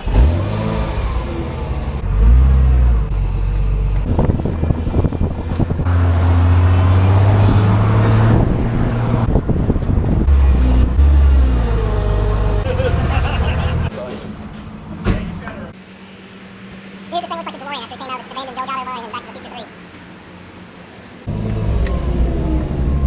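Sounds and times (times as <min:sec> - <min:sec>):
road noise: 0:00.0 - 0:23.0.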